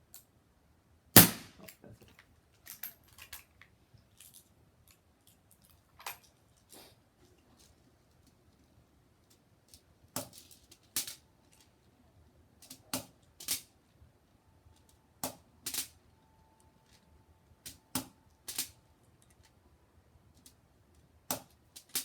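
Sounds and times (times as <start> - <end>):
air revolver shots: 1.2 - 1.6.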